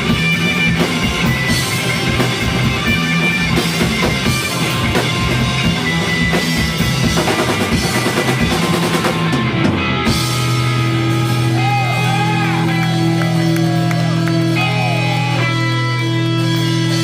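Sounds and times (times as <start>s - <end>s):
live rock band playing: 0.0s - 17.0s.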